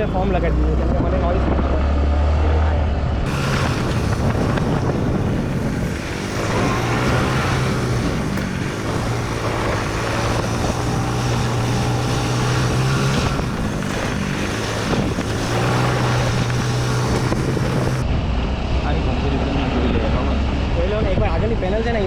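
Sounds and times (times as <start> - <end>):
engine humming: 0.0 - 20.8
workshop background noise: 3.3 - 18.0.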